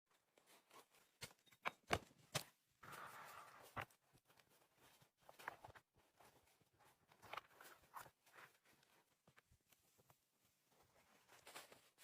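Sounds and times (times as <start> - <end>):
short rustle: 10.7 - 12.0.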